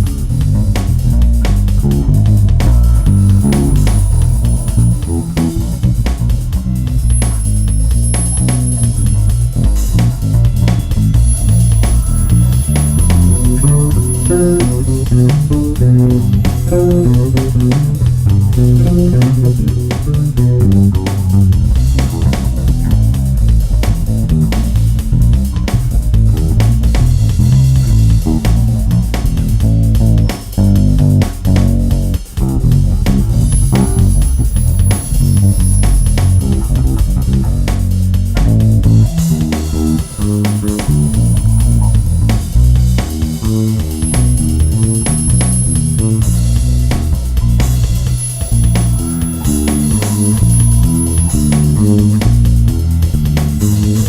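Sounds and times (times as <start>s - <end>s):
low bass line: 0.0s - 54.0s
plucked guitar solo line: 11.3s - 21.5s, 32.6s - 37.6s, 48.4s - 52.4s.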